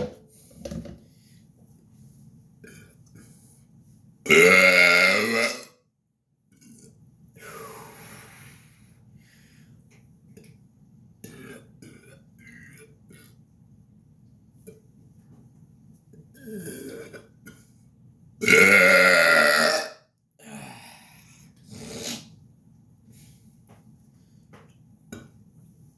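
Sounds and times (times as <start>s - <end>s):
man burping: 4.3s - 5.7s, 18.4s - 20.6s
faint breathy sound: 7.4s - 9.8s.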